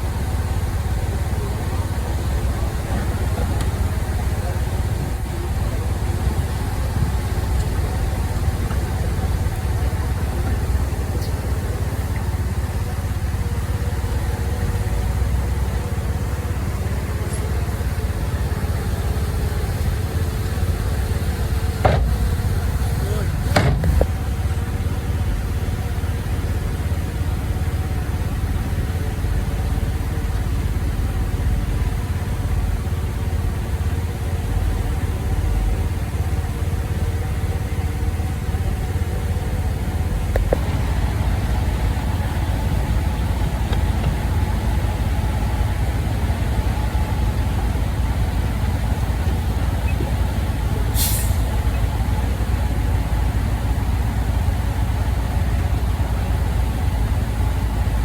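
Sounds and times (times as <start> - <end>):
heavy vehicle engine rumbling: 0.0 - 58.0
air release hiss: 50.6 - 51.9.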